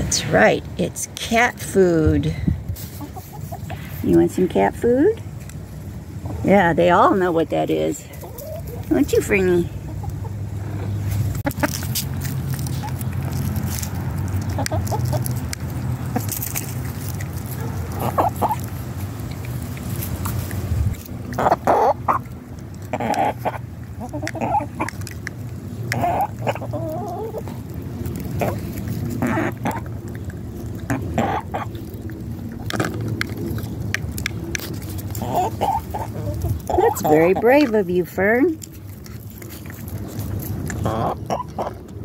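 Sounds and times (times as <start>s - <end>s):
hens clucking: 2.8s - 4.0s, 7.5s - 12.0s, 14.3s - 20.4s, 21.0s - 33.0s, 34.9s - 38.0s, 39.5s - 42.0s.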